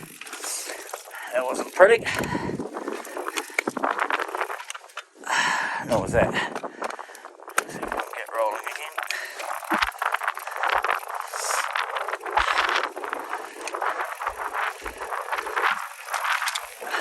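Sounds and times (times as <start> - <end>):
bike knocking on rocks: 0.0 - 5.1, 5.8 - 16.8
bike rattling: 0.0 - 17.0
bike tyres on rocky trail: 0.0 - 17.0.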